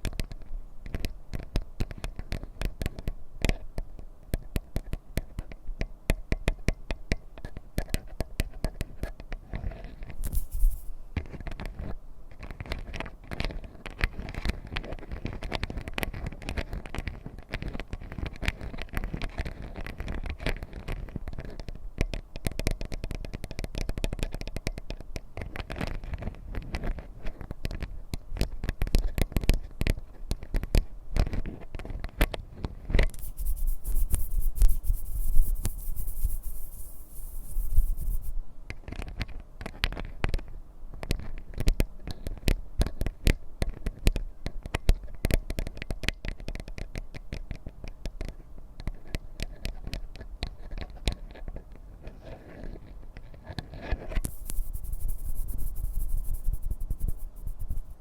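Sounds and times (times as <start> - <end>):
rapid tapping and scratching: 4.3 - 32.4, 33.0 - 40.4, 52.6 - 58.0
high hiss: 10.2 - 11.0, 33.1 - 38.4, 54.2 - 58.0.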